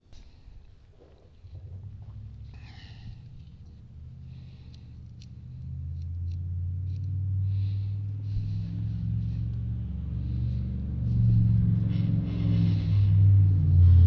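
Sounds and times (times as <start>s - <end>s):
electric motor hum: 1.6s - 14.0s
light clicks: 4.6s - 7.2s.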